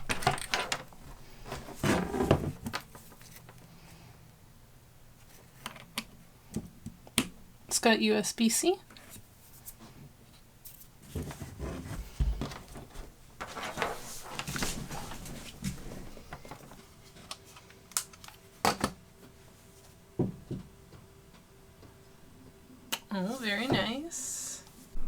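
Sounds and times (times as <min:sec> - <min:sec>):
rustling and shuffling: 0:00.0 - 0:04.1, 0:09.0 - 0:21.5, 0:23.2 - 0:25.0
faint steady hum: 0:00.0 - 0:25.0.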